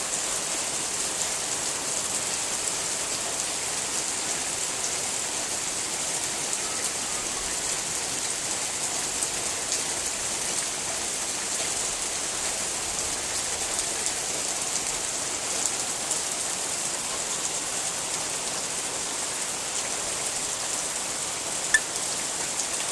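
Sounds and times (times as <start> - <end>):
steady rain hiss: 0.0 - 22.9
raindrops ticking: 21.7 - 22.0.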